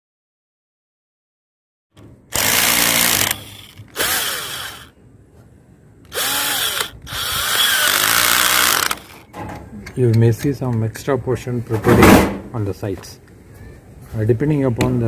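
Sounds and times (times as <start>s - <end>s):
electric drill bursts: 2.3s - 4.9s, 6.1s - 9.3s.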